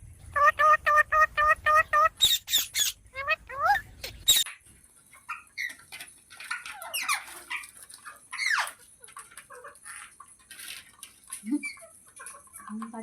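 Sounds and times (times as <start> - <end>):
parrot chattering and squawking: 0.3 - 4.5.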